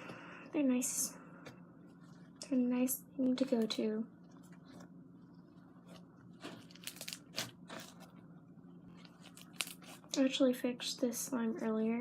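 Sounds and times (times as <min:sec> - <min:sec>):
slime squishing: 0:05.8 - 0:08.2, 0:08.9 - 0:10.2
foam beads crackling: 0:06.6 - 0:08.0, 0:09.2 - 0:10.0.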